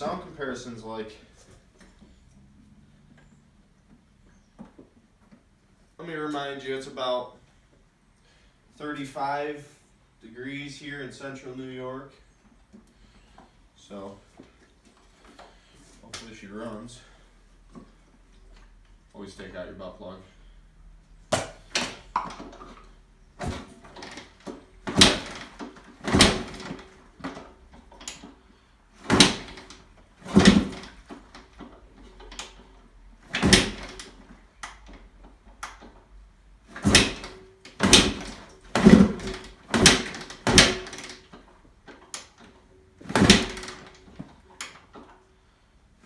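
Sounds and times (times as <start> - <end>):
dirt bike kickstarter thumps: 21.3 - 22.8, 23.4 - 28.3, 29.0 - 32.6, 33.3 - 35.0, 36.7 - 42.3, 43.0 - 45.0
engine turning over: 23.4 - 28.3, 29.0 - 32.7, 33.3 - 35.0, 36.7 - 41.4, 43.0 - 44.1.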